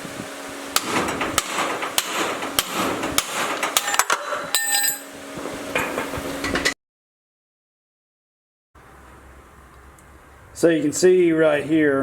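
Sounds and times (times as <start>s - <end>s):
hammer striking metal chisel: 0.8s - 5.1s
ringing metallic clatter: 3.7s - 5.1s.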